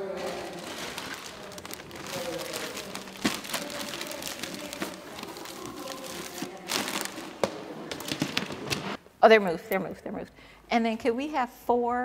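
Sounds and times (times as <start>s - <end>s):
background chatter: 0.0s - 9.0s.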